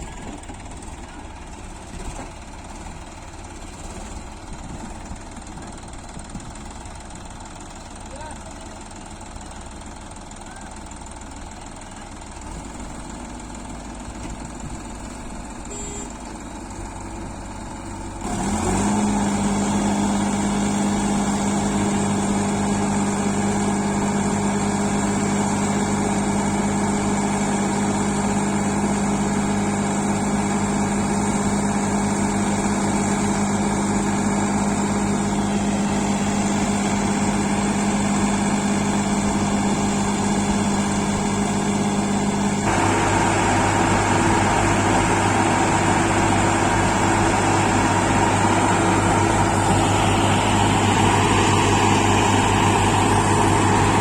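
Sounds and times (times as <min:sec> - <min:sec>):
heavy vehicle engine revving: 0:12.4 - 0:54.0.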